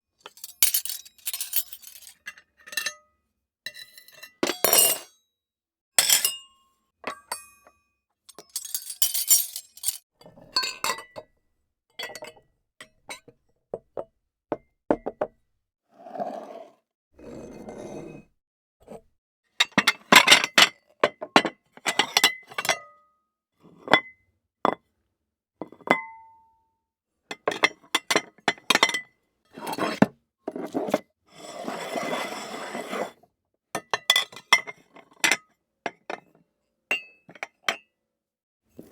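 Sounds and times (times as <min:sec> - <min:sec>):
cutlery and glassware clinking: 0:00.3 - 0:03.0, 0:03.7 - 0:05.1, 0:06.0 - 0:10.0.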